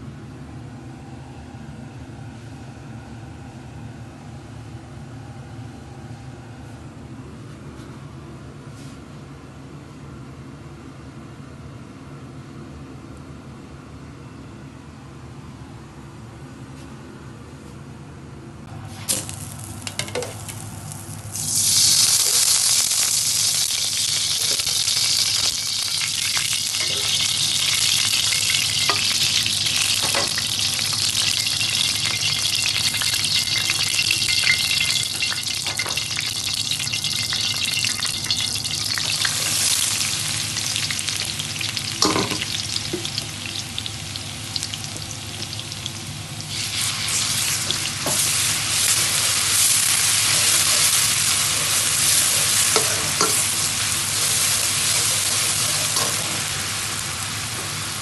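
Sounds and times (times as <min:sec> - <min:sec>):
food sizzling in hot oil: 0:18.9 - 0:58.0.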